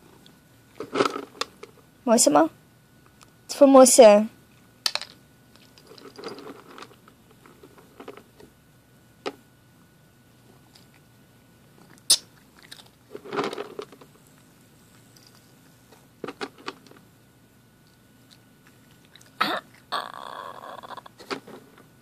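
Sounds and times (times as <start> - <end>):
cat crunching a dry treat: 11.7 - 17.0, 17.8 - 20.0.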